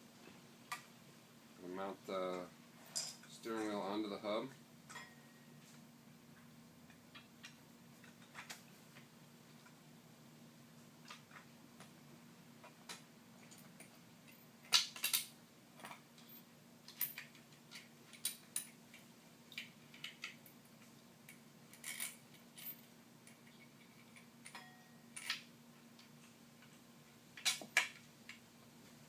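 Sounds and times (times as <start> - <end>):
faint low hum: 0.0 - 29.0
metal parts and screws clinking: 2.8 - 3.8, 13.4 - 25.5, 27.4 - 28.0.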